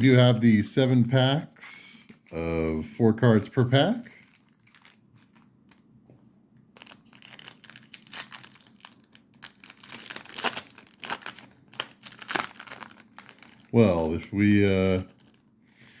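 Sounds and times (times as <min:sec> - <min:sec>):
wrapper crinkling and tearing: 0:04.1 - 0:05.9, 0:06.6 - 0:15.5.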